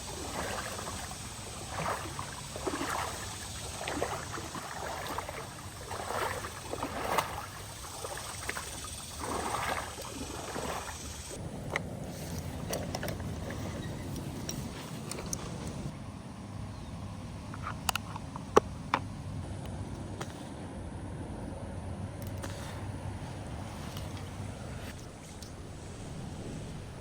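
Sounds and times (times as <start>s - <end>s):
river water splashing: 0.0s - 16.0s
wind noise on microphone: 8.7s - 16.0s, 22.4s - 27.0s.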